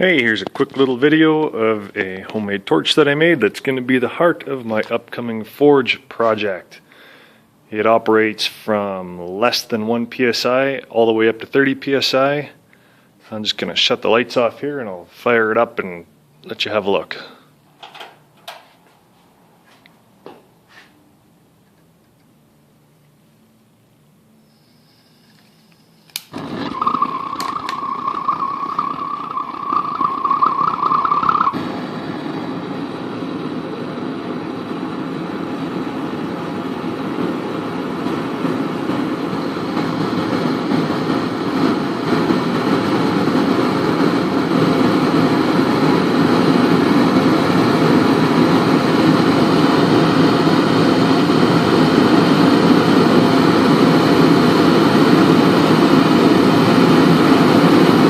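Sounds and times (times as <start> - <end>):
high whistle: 24.4 - 31.6
burner lighting with a pop: 26.1 - 27.9
rushing burner flame: 26.1 - 58.0.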